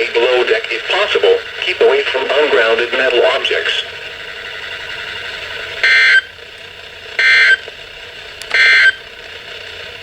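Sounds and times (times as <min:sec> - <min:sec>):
radio hiss: 0:00.0 - 0:06.2.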